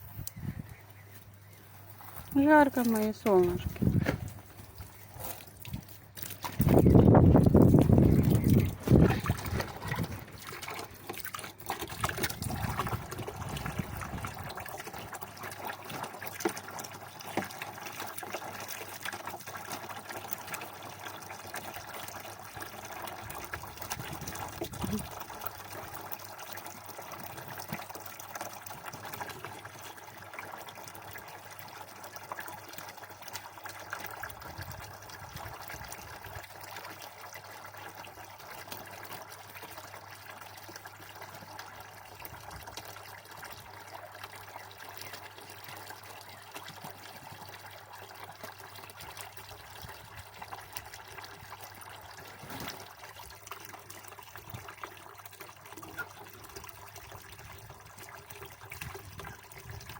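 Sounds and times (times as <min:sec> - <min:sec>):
water running from a hose: 0:02.2 - 0:59.9.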